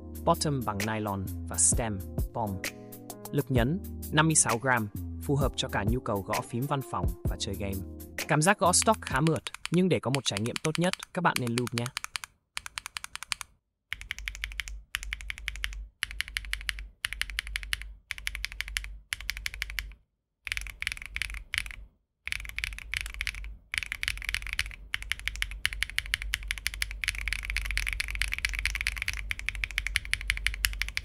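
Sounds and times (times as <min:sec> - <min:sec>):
fast typing on mechanical keyboard: 0:08.8 - 0:31.0.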